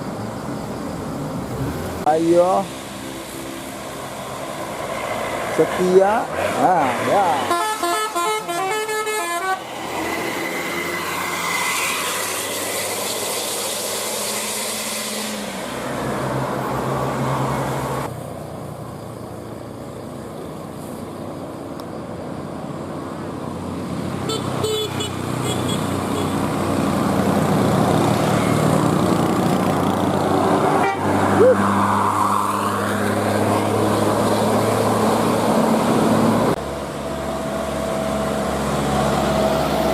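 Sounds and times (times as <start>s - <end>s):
buses passing: 0.0s - 39.9s
multi-tone bus horn melody: 7.4s - 9.7s, 24.3s - 26.4s, 30.6s - 31.2s.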